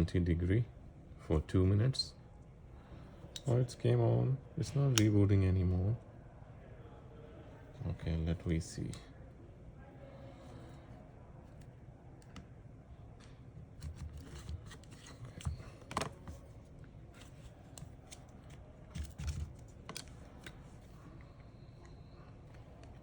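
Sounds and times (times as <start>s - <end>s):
steady low hum: 0.0s - 23.0s
tools clicking and scraping: 13.8s - 16.5s.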